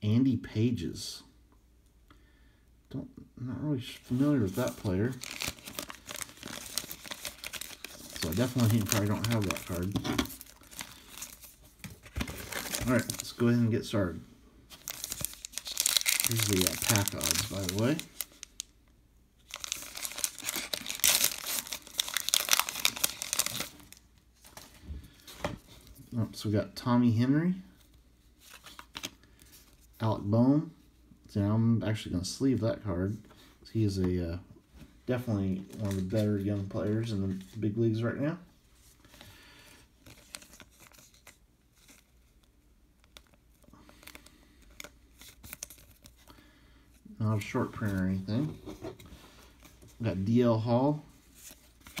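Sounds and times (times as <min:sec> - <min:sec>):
plastic wrapper crinkling: 0:04.0 - 0:13.6, 0:14.7 - 0:18.7, 0:19.4 - 0:24.8, 0:40.0 - 0:46.4
cards rustling and clicking: 0:04.1 - 0:13.6, 0:14.7 - 0:18.6, 0:19.5 - 0:25.9, 0:40.0 - 0:46.3.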